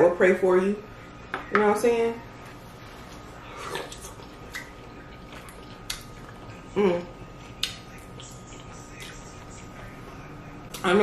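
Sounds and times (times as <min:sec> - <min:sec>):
person humming: 0:06.7 - 0:07.2.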